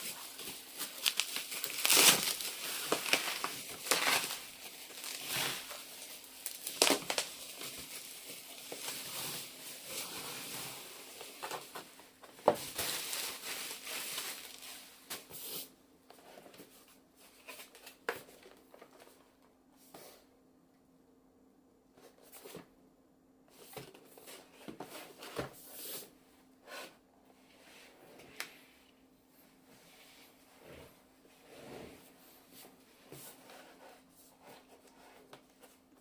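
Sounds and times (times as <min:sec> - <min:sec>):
packaging crinkling and rustling: 0:00.0 - 0:15.1.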